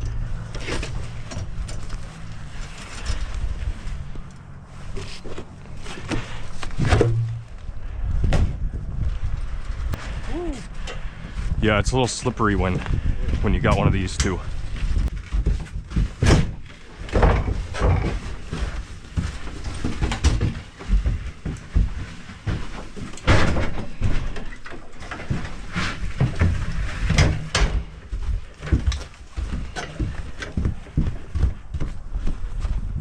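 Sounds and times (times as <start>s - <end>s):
footsteps: 0.1s - 23.2s, 23.8s - 33.0s
knocks and thumps of gear: 13.6s - 32.0s.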